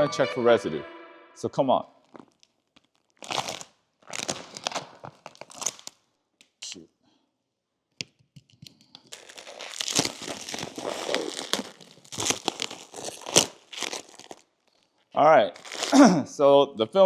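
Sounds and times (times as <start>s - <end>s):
film peeling off glass: 2.8s - 6.0s, 9.1s - 14.8s, 15.6s - 16.0s.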